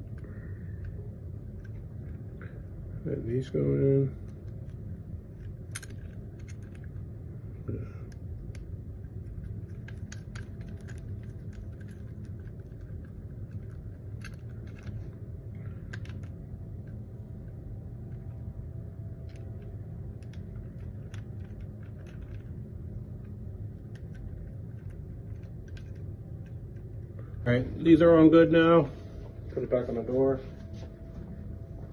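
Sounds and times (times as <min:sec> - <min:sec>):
steady low rumble: 0:00.0 - 0:31.9
small metal parts clicking: 0:03.9 - 0:07.1, 0:07.7 - 0:17.0, 0:18.0 - 0:27.2.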